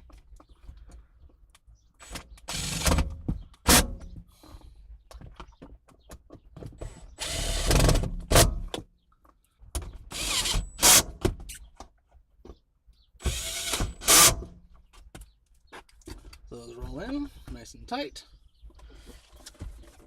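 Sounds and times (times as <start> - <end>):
power drill driving screws: 2.0 - 3.1, 6.8 - 8.7, 10.1 - 11.2, 13.2 - 14.6.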